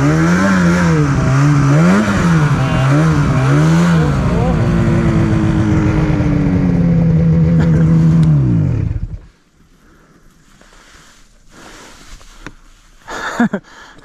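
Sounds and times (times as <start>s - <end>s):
snowmobile engine running: 0.0s - 9.3s
faint rustling: 9.2s - 13.1s.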